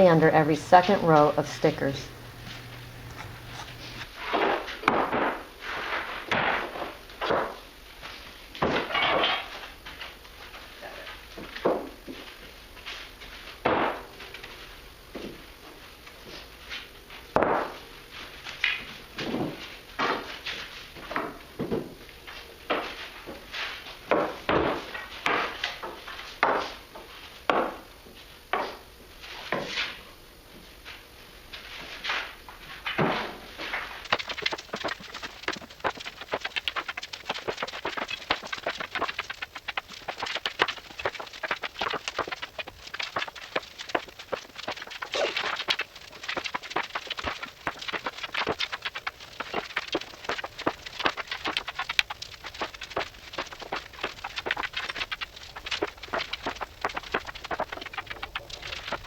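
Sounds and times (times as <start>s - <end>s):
wood scraping: 1.7s - 4.1s.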